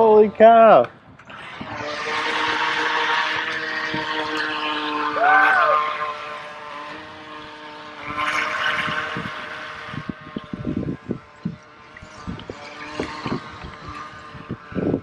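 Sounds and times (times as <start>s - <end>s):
toy boat electric motors whining: 0.0s - 15.0s
water and wind hiss: 0.0s - 15.0s
short rising and falling tone: 1.3s - 11.3s.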